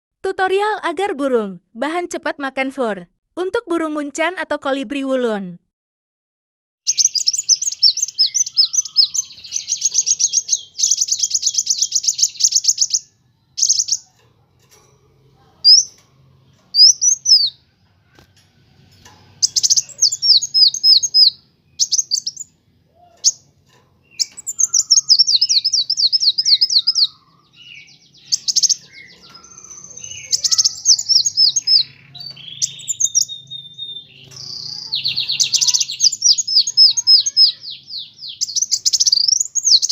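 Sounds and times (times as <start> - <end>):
bird chirping in fast trills: 6.9 - 14.2, 15.6 - 17.6, 19.3 - 39.9.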